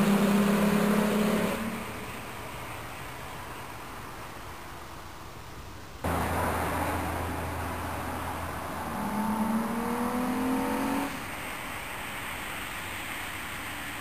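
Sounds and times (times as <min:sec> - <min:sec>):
car engine accelerating: 0:00.0 - 0:02.8, 0:06.0 - 0:11.4.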